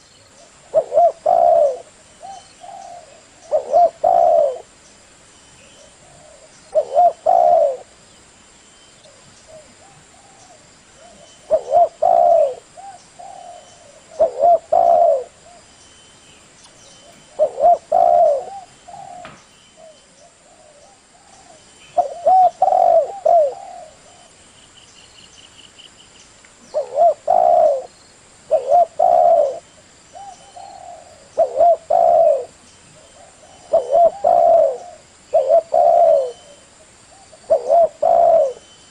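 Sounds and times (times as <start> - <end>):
dove cooing: 0.0 - 4.8, 5.6 - 8.0, 9.1 - 15.7, 17.0 - 24.4, 26.6 - 38.9.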